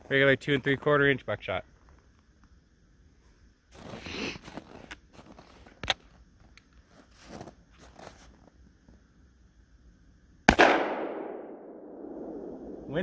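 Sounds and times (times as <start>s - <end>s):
shotgun blast with echo: 10.5s - 12.9s.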